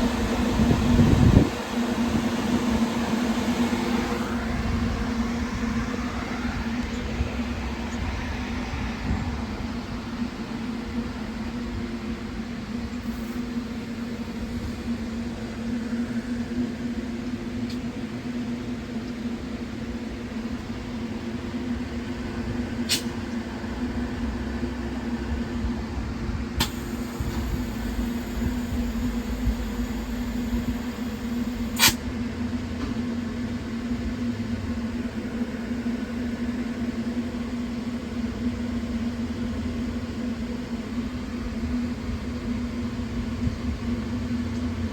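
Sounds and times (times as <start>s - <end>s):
train mechanical hum: 0.0s - 44.9s
sharp clicks: 26.6s - 32.0s.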